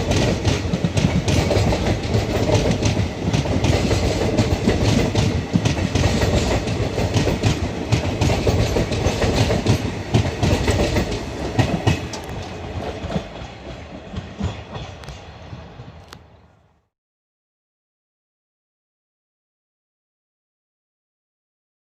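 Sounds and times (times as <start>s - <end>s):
train wheels clattering over joints: 0.0s - 15.4s
low train rumble: 0.0s - 16.9s.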